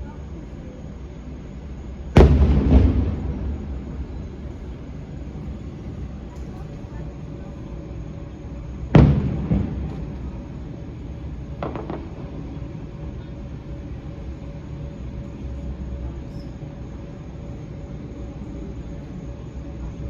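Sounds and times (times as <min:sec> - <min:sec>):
distant fireworks booming: 0:02.1 - 0:07.3, 0:08.5 - 0:15.5
low rumble: 0:02.2 - 0:06.4.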